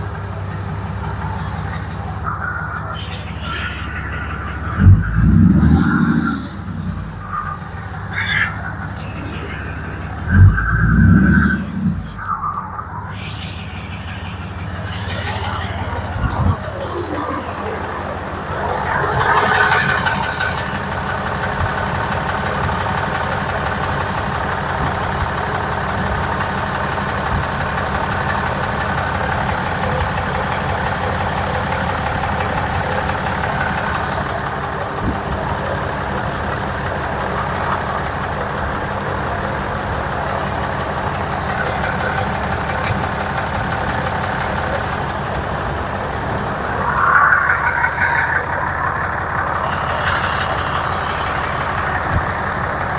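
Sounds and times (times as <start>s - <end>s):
motor running steadily: 0.0s - 52.9s
hissing surge: 0.1s - 21.4s, 40.2s - 52.9s.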